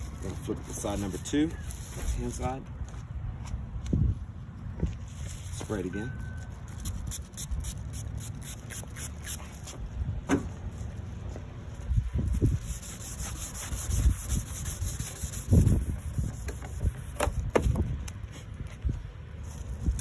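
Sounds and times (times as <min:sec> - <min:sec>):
wet sandpaper scrubbing plastic: 0:00.0 - 0:02.6, 0:06.7 - 0:09.8, 0:12.2 - 0:18.6.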